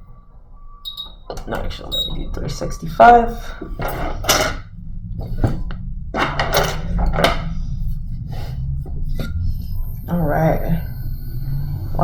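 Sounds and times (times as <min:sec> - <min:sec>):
steady low hum: 0:00.0 - 0:12.0
tools clattering and rustling: 0:03.5 - 0:07.6.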